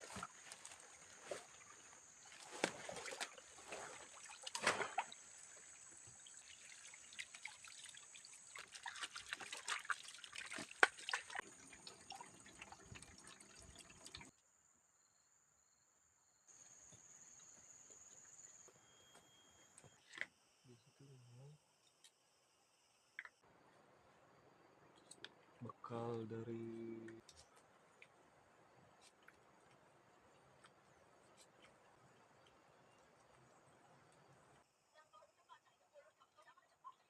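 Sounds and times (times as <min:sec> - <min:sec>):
water trickling and splashing: 0:00.0 - 0:14.3.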